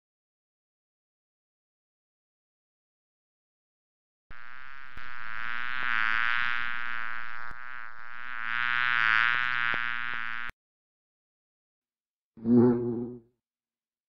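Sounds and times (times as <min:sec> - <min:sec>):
bee buzzing: 0:04.3 - 0:10.5.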